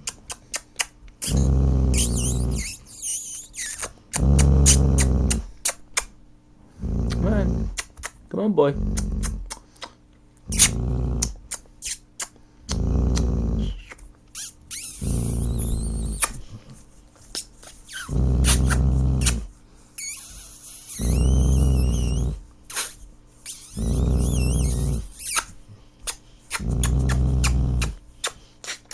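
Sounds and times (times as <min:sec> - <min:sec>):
dog growling: 0:01.2 - 0:05.6, 0:06.7 - 0:07.8, 0:08.6 - 0:09.6, 0:10.4 - 0:11.6, 0:12.7 - 0:14.0, 0:14.8 - 0:16.8, 0:17.9 - 0:19.5, 0:20.4 - 0:22.4, 0:23.7 - 0:25.4, 0:26.6 - 0:28.0.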